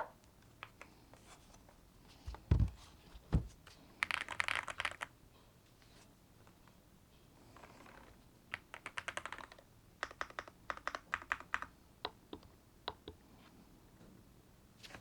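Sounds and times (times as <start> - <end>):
mechanical keyboard typing: 8.5 - 11.7.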